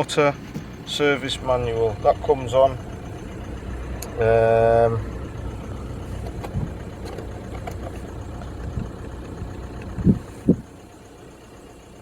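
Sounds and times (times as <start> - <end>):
diesel engine idling: 0.0 - 12.0
short bumps: 6.0 - 8.9.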